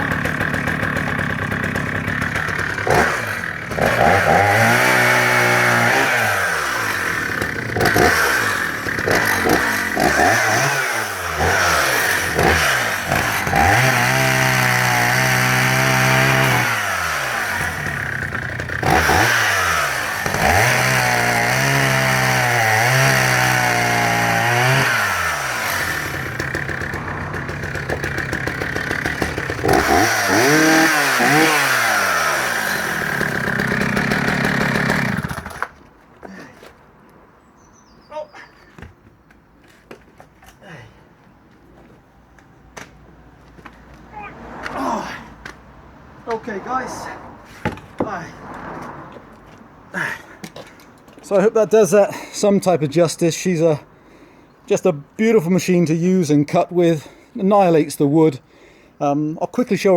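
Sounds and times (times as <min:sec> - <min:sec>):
chainsaw revving cutting wood: 0:00.0 - 0:35.8.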